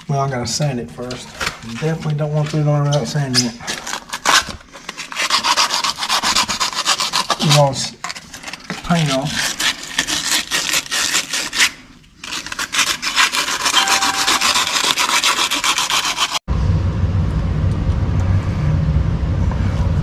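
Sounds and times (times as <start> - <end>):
hand-sanding pipe end: 5.1 - 7.6, 9.3 - 16.4.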